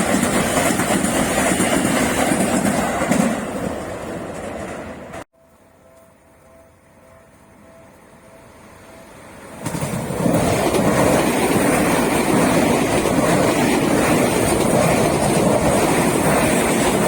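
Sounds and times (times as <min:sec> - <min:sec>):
train wheels rumbling on rails: 0:00.0 - 0:05.2, 0:08.8 - 0:17.0.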